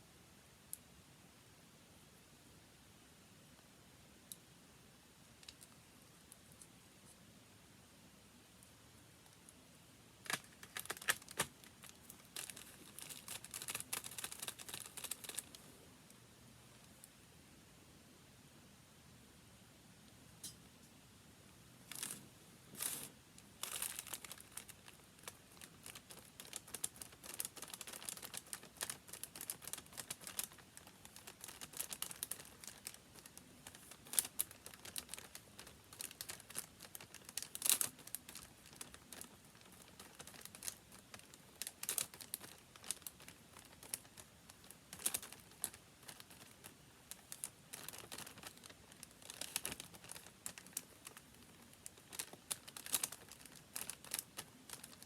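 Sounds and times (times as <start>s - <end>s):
paper crinkling and rustling: 10.3s - 15.6s, 21.9s - 55.0s.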